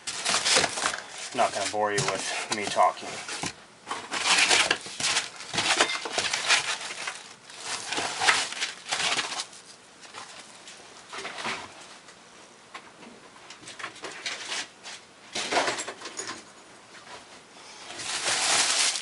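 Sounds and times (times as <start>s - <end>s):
packing material crinkling: 0.0s - 10.6s, 17.9s - 19.0s.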